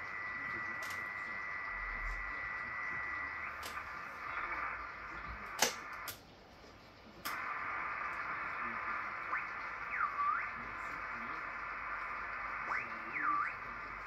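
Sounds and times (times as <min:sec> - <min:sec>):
radio static hiss: 0:00.0 - 0:14.0
radio control clicks: 0:00.7 - 0:01.2, 0:03.4 - 0:04.6, 0:05.2 - 0:06.2, 0:07.2 - 0:08.3.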